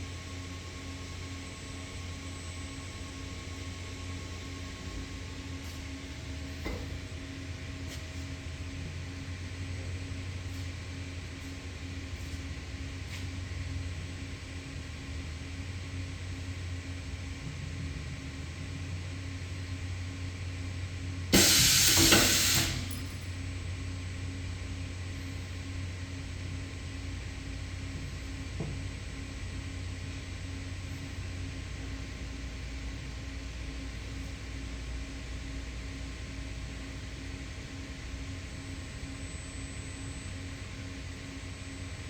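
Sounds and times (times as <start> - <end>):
loud hissing burst: 21.4 - 22.9.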